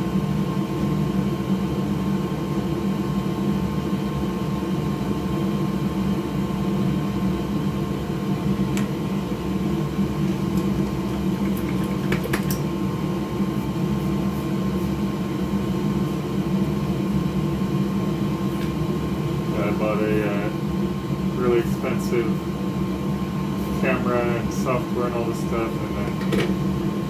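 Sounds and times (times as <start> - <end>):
small electric fan whirring: 0.2 - 27.0.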